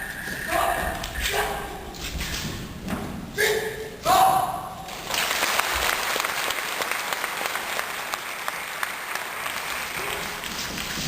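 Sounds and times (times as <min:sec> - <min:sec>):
audience applauding: 0:05.0 - 0:11.0.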